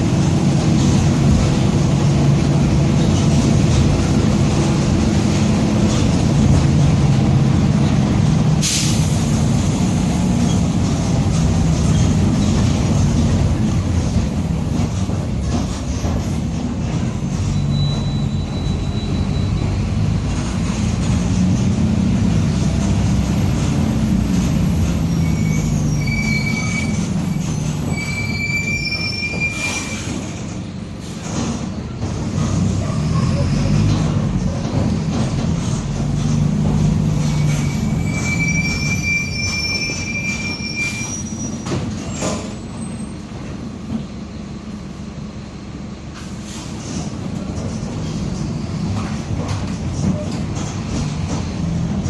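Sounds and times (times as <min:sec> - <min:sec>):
bus drivetrain rumble: 0:00.0 - 0:52.0
brief high squeals: 0:17.5 - 0:19.8, 0:25.1 - 0:30.3, 0:37.3 - 0:43.2.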